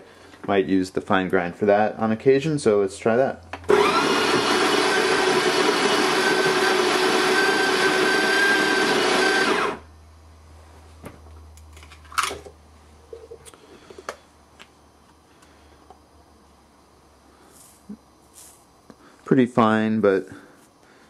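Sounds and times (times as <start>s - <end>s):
coffee grinder motor drone: 3.7s - 9.9s.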